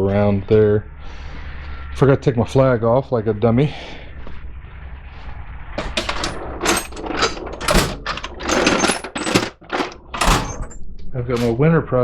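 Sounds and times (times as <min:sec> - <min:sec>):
clicks and knocks: 0:05.8 - 0:10.8.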